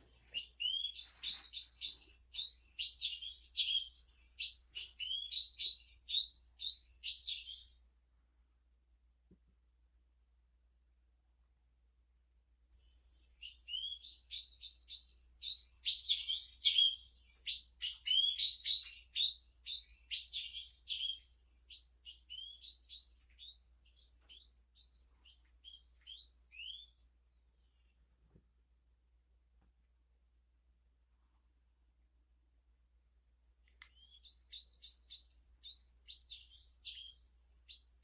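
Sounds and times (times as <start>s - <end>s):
small birds chirping: 0.0s - 7.9s, 12.7s - 28.0s, 33.4s - 38.0s.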